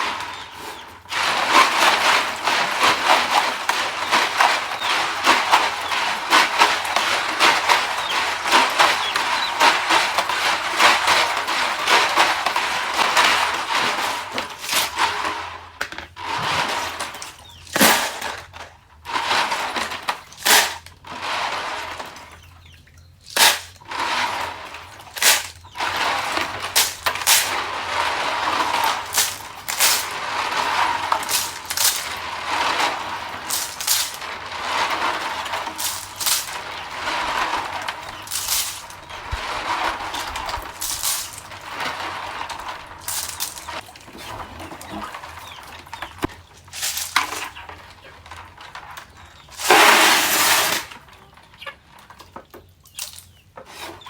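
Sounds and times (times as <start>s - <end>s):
clattering rattle: 1.0s - 22.4s, 23.3s - 51.0s.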